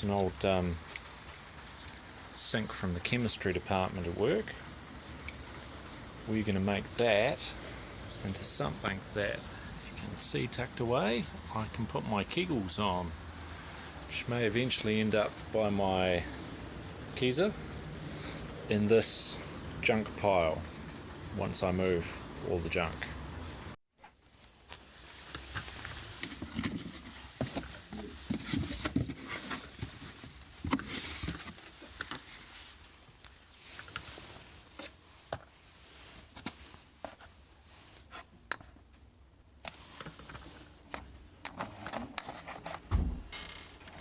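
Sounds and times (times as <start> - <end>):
hard objects clinking and clattering: 40.9 - 42.9
dull thump: 42.9 - 43.3.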